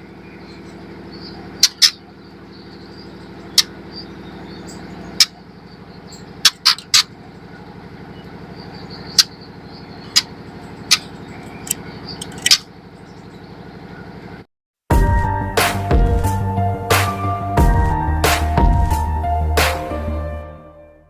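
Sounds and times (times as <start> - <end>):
bird call notes: 0.0 - 14.3
steady low buzz: 7.1 - 21.0.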